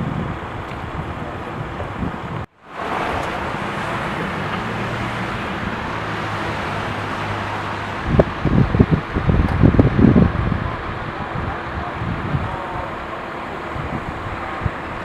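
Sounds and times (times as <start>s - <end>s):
road traffic noise: 0.0s - 15.0s
wind buffeting microphone: 0.0s - 15.0s.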